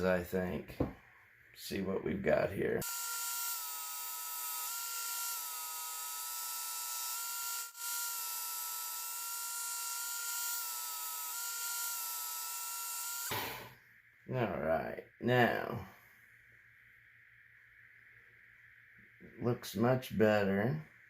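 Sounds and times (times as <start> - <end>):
belt sharpener grinding knife: 2.8 - 13.3.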